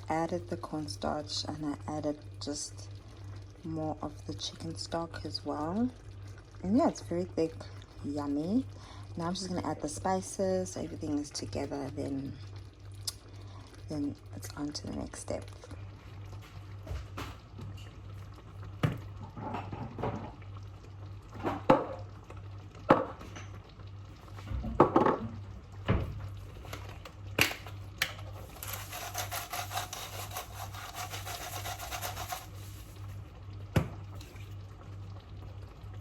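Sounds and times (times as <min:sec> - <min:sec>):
rapid even scraping: 0:28.6 - 0:32.9.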